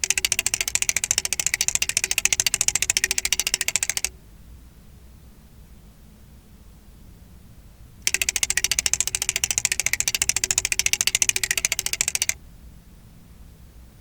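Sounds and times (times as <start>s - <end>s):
flip dot display clicking: 0.0s - 4.1s, 8.0s - 12.4s.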